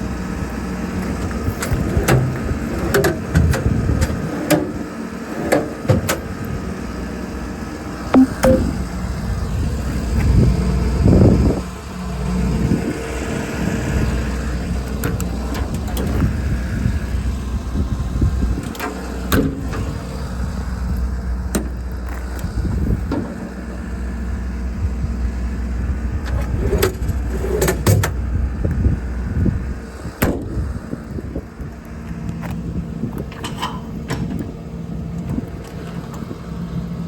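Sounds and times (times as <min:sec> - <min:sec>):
diesel engine idling: 0:00.0 - 0:26.2
sharp knocks and clicks: 0:08.2 - 0:08.8.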